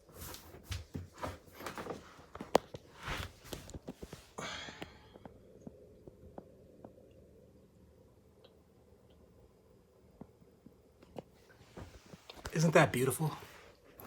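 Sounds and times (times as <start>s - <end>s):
handling rustles and knocks: 0.0s - 4.4s.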